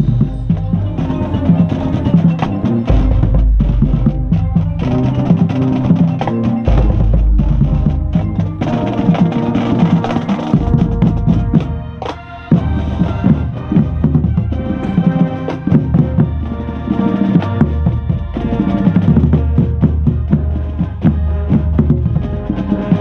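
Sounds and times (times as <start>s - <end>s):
bass drums: 0.0s - 15.1s
brass holding chords: 0.0s - 23.0s
drumline: 0.0s - 23.0s.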